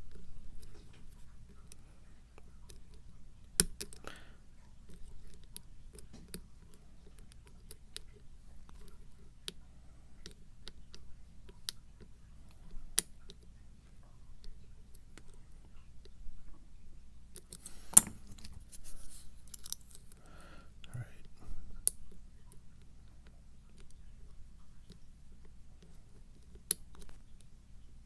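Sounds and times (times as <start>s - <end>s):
faint metallic lock clicks: 17.4s - 18.6s
sharp lock clicks: 17.6s - 18.3s.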